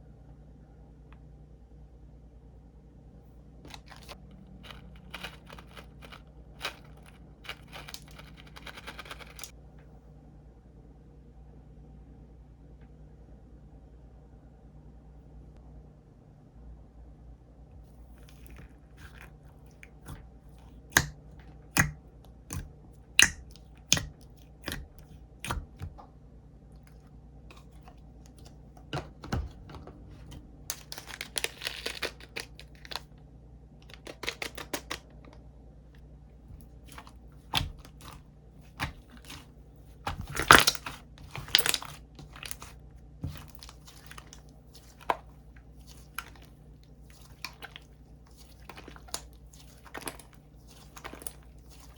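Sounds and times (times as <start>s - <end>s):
slime squishing and popping: 3.7s - 9.5s, 18.1s - 26.0s, 27.5s - 33.1s, 36.5s - 51.9s.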